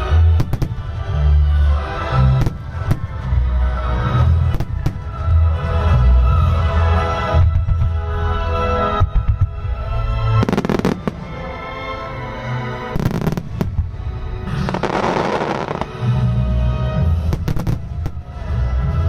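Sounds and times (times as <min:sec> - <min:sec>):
music: 0:00.0 - 0:19.0
fireworks bursting: 0:00.3 - 0:01.0, 0:10.3 - 0:11.6, 0:12.9 - 0:16.2, 0:17.1 - 0:18.5
fireworks crackling: 0:10.2 - 0:11.6, 0:13.0 - 0:16.2.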